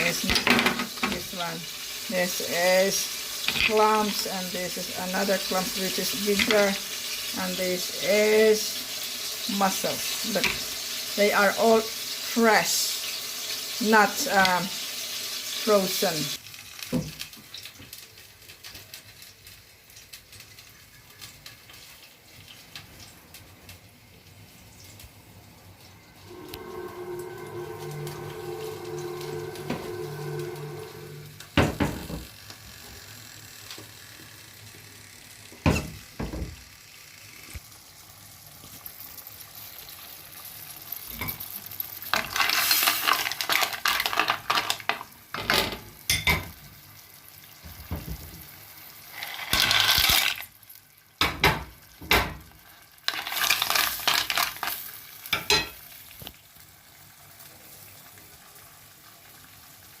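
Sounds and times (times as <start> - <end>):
food sizzling in a pan: 0.0 - 60.0
pan and utensils clinking: 53.1 - 55.9.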